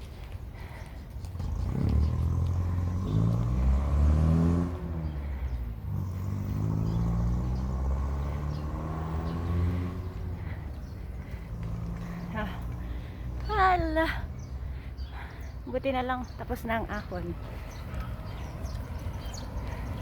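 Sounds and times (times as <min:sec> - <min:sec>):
vehicle engine revving: 0:01.3 - 0:13.5.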